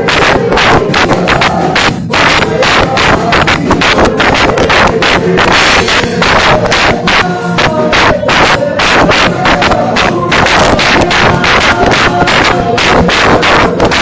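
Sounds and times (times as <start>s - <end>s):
fast dance music: 0.0s - 14.0s.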